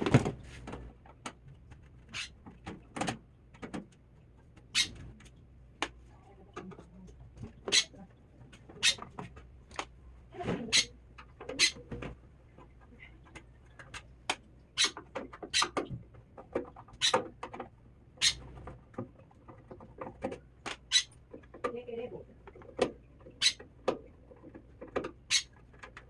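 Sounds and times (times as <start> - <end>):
sharp clicks and light knocks: 0.0 - 7.7.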